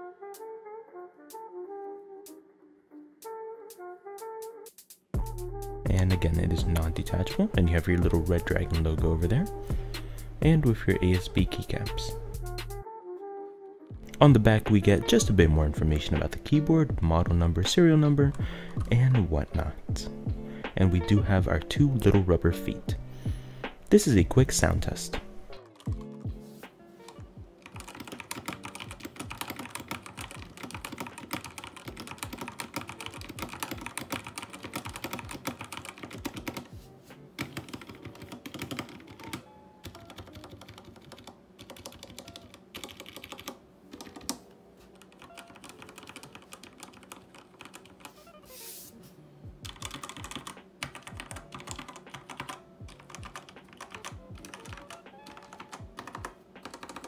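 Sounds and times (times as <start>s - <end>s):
mechanical keyboard typing: 25.6s - 26.2s, 27.1s - 36.7s, 37.4s - 44.4s, 45.0s - 48.1s, 49.6s - 57.0s.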